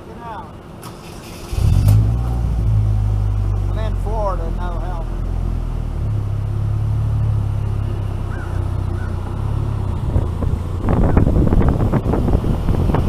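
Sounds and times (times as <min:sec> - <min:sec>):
car engine pulling away: 0:00.6 - 0:13.0
wind buffeting microphone: 0:08.2 - 0:13.0.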